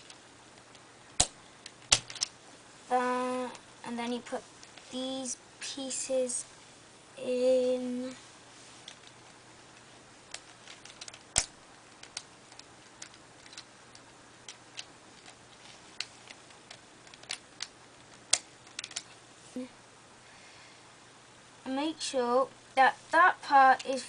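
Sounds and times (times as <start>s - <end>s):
plastic puzzle pieces clicking: 0.0s - 2.3s, 10.3s - 19.1s.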